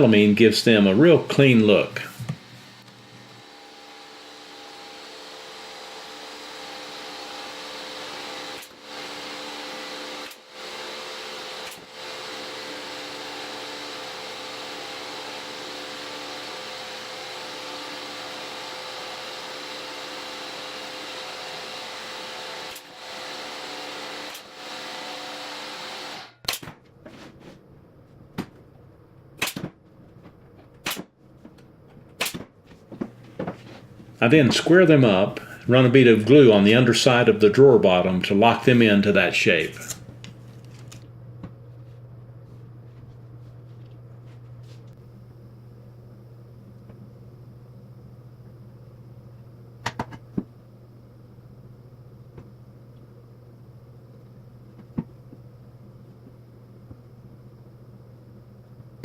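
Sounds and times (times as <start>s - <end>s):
woodworking machine humming: 0.0s - 26.5s.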